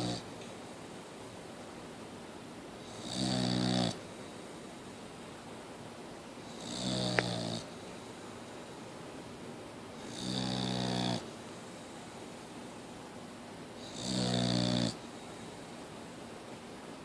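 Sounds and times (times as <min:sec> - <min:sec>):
dog snoring: 0:00.0 - 0:00.2, 0:02.8 - 0:04.0, 0:06.4 - 0:07.8, 0:10.0 - 0:11.3, 0:13.8 - 0:15.0.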